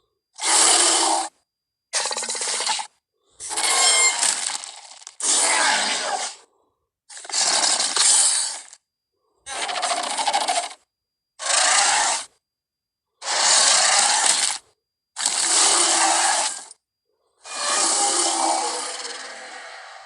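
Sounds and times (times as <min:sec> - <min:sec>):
raspy creature growls and roars: 0:13.2 - 0:14.5, 0:15.2 - 0:16.7, 0:17.4 - 0:20.0.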